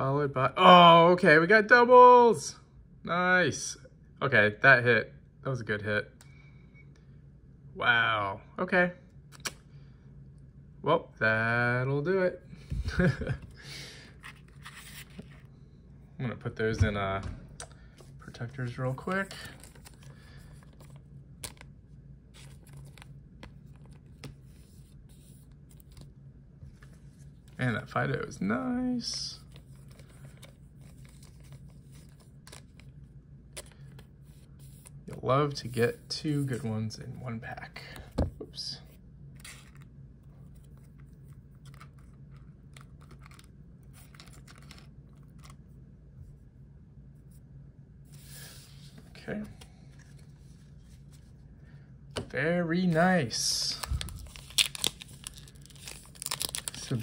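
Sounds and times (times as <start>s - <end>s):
cards rustling and clicking: 14.1s - 15.5s, 17.6s - 27.8s, 29.0s - 36.7s, 39.3s - 45.6s, 52.9s - 57.0s
cards sliding into plastic sleeves: 14.1s - 15.5s, 29.4s - 36.7s, 52.9s - 57.0s
cards sliding into sleeves: 14.1s - 15.5s, 48.1s - 51.3s.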